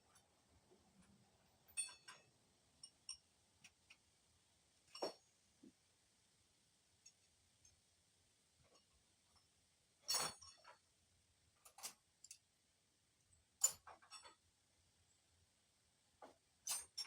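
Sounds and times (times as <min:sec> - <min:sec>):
metal tools clinking: 0:01.7 - 0:03.2.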